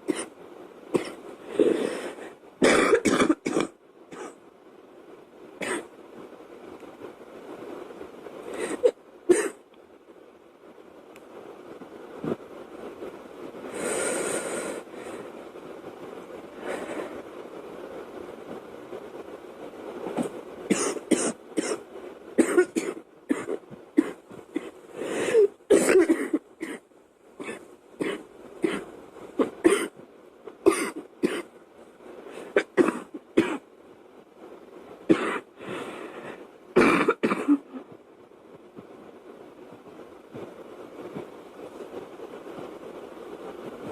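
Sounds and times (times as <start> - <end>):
girl coughing: 2.6 - 4.4, 8.6 - 9.6, 20.7 - 21.8, 22.4 - 24.7, 25.3 - 26.8, 29.4 - 29.9, 30.7 - 31.5, 35.1 - 35.4, 36.8 - 37.8.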